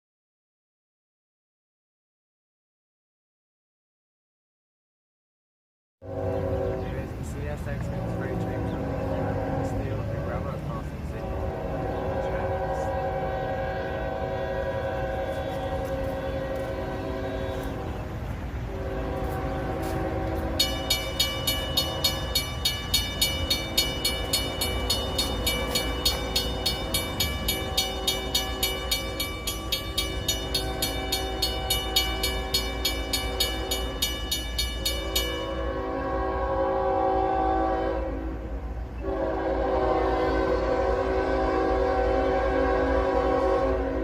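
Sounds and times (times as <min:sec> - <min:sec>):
locomotive horn blasts: 0:06.0 - 0:44.0
crossing bell ringing: 0:19.0 - 0:36.6.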